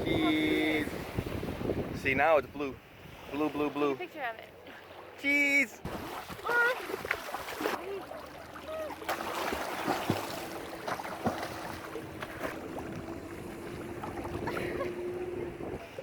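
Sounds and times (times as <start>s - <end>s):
waves breaking on a beach: 0.0s - 16.0s
distant motor hum: 8.3s - 16.0s.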